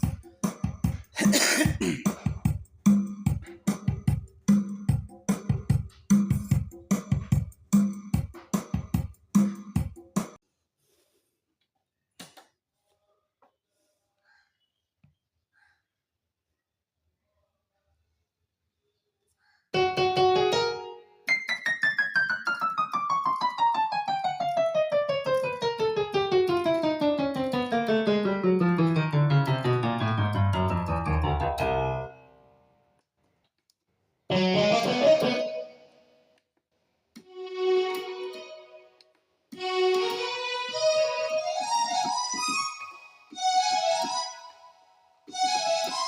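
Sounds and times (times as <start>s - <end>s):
keyboard notes: 19.8s - 32.6s, 34.3s - 36.0s, 37.2s - 46.0s.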